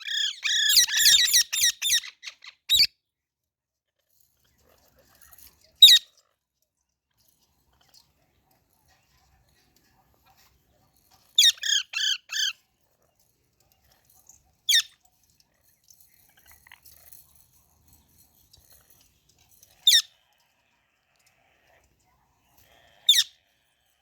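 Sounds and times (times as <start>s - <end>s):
parrot chirping: 0.0s - 2.9s, 5.8s - 6.1s, 11.4s - 12.6s, 14.7s - 15.0s, 19.8s - 20.1s, 23.0s - 23.4s
soft parrot chatter: 0.0s - 2.9s, 4.3s - 6.4s, 7.1s - 24.0s.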